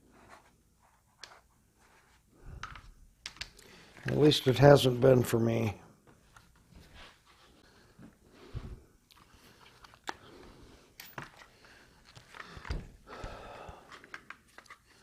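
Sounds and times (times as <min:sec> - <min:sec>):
plastic parts clicking and rubbing: 0:02.5 - 0:04.3, 0:09.1 - 0:10.3, 0:11.0 - 0:15.0.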